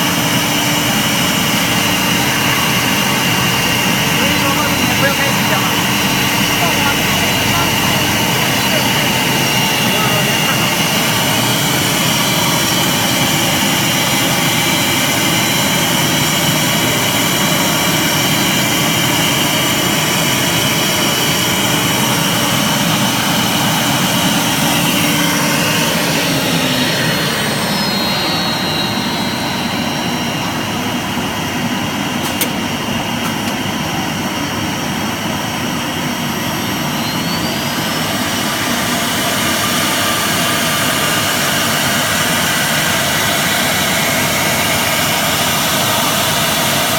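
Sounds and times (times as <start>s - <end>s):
wood router machine whine: 0.0s - 46.9s.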